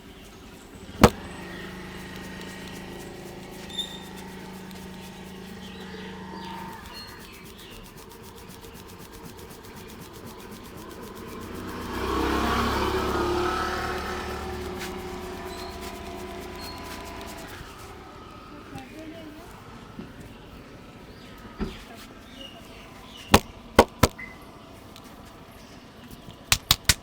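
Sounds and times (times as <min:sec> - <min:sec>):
motor vehicle passing by: 0:00.0 - 0:26.5
birds chirping faintly: 0:00.0 - 0:27.0
steady low hum: 0:00.6 - 0:12.0.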